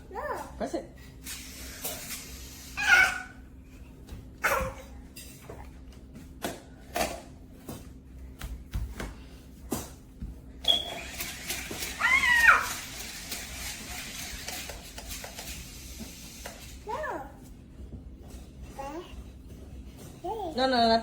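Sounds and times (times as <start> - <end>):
warbling toy cry: 11.9 - 12.9.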